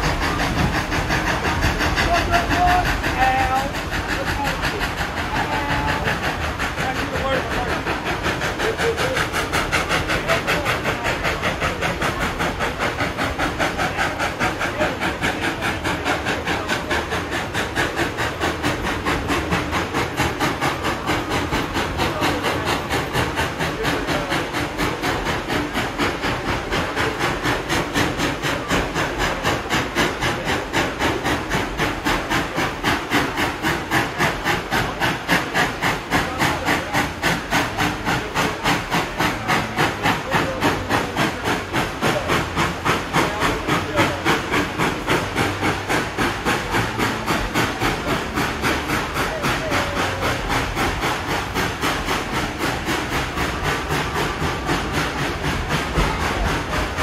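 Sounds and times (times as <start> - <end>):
steady steam hiss: 0.0 - 57.0
steam locomotive chuffing: 0.0 - 57.0.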